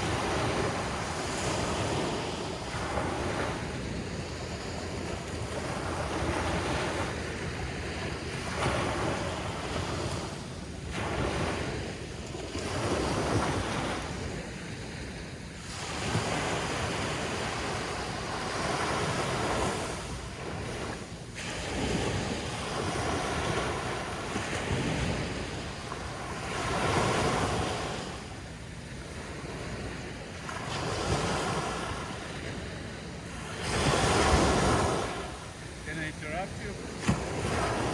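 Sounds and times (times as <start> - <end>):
ocean surf breaking: 0.0 - 14.4, 29.1 - 37.9
wind rumbling on microphone: 0.0 - 37.9.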